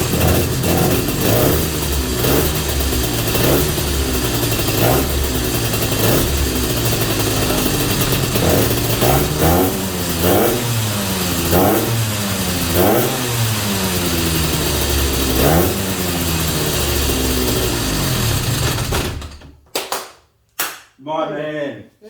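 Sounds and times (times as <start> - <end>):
engine revving in blips: 0.0 - 19.3.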